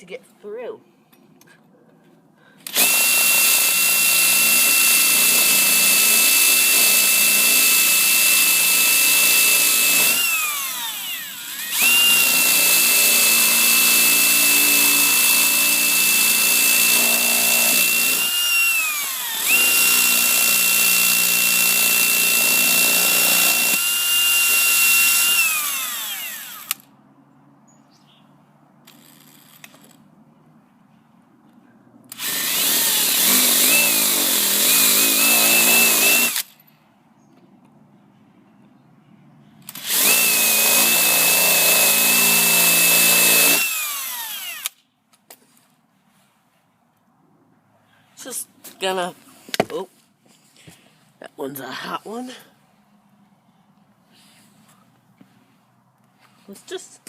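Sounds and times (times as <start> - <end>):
electric drill whining into metal: 2.6 - 26.8, 32.1 - 36.6, 39.7 - 44.8.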